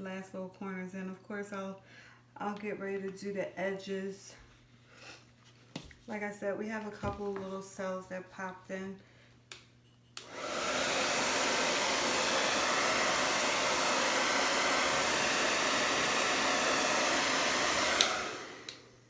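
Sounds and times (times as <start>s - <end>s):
blow dryer running: 10.2s - 19.0s.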